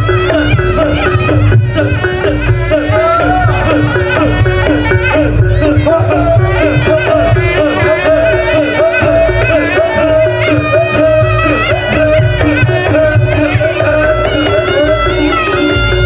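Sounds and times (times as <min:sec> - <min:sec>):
drums beating: 0:00.0 - 0:16.0
shawm melody: 0:00.0 - 0:16.0.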